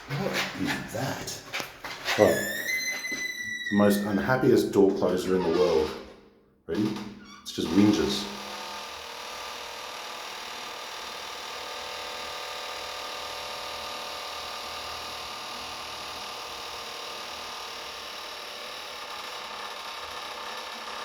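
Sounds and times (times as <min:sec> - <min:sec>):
door closer whining: 0:02.2 - 0:04.0.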